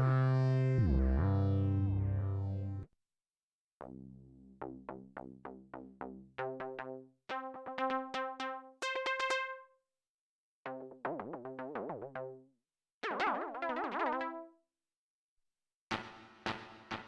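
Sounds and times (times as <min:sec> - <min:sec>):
synthesizer held wobbling notes: 0:00.0 - 0:02.8.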